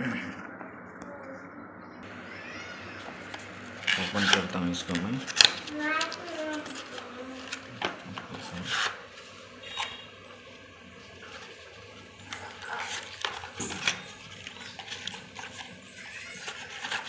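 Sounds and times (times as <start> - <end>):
packaging rustling: 11.0 - 17.0.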